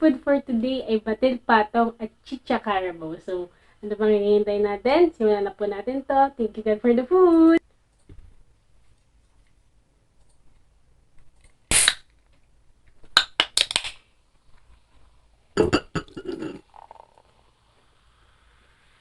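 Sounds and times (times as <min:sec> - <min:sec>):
person eating: 0:15.6 - 0:17.4.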